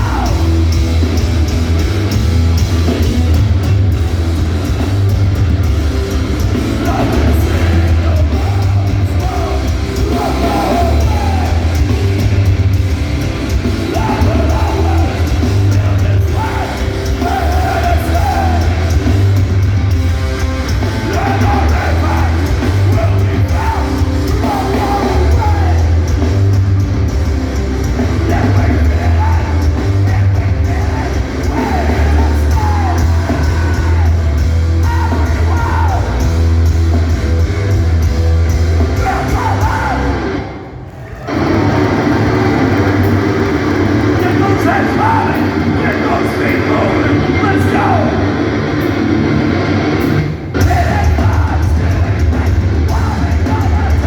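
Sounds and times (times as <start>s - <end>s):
shouted vocals: 0.0s - 1.2s, 6.5s - 12.5s, 13.7s - 19.3s, 20.7s - 26.5s, 28.0s - 36.7s, 38.8s - 48.5s
bass guitar: 0.0s - 54.0s
distorted guitars: 0.0s - 54.0s
drums: 0.0s - 54.0s.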